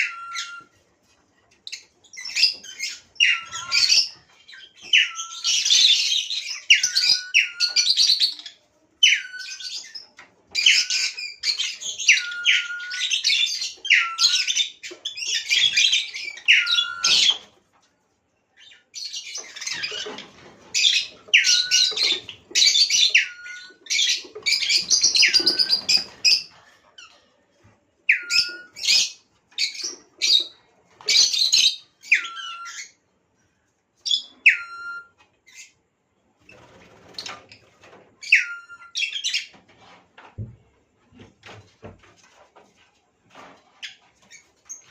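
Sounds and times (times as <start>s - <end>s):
lovebirds chirping: 1.6s - 17.5s, 18.5s - 27.2s.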